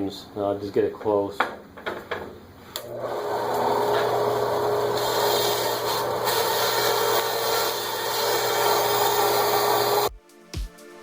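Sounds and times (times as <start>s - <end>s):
bandsaw motor hum: 2.8s - 10.1s.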